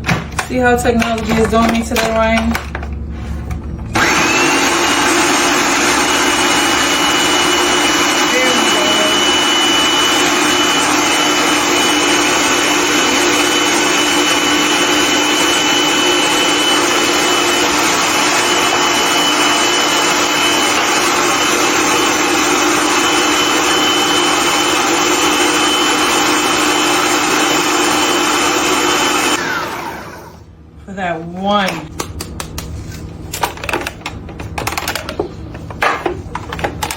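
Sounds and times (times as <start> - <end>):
food processor motor running: 3.9 - 30.4.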